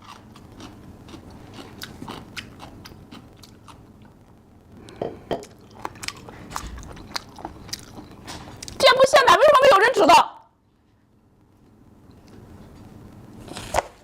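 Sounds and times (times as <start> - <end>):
person chewing crunchy food: 0.0 - 4.2, 4.9 - 8.8, 13.4 - 14.0.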